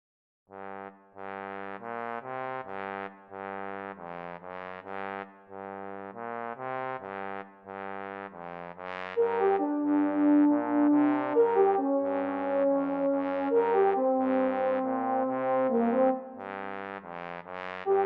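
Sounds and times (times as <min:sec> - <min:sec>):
brass chords: 0:00.5 - 0:18.0.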